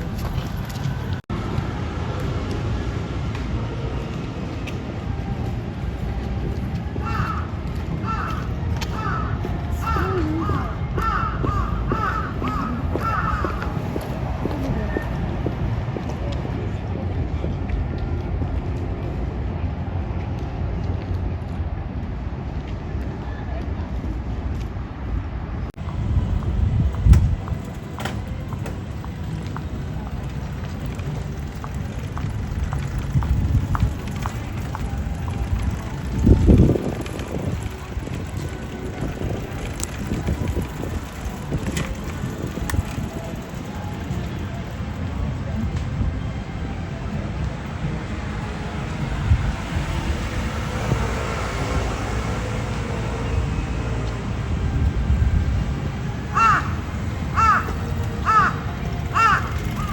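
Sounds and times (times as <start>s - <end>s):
footsteps on pavement: 0.0s - 21.7s, 25.8s - 46.0s
low rumble of city street: 0.0s - 59.9s
wind buffeting microphone: 0.0s - 59.9s.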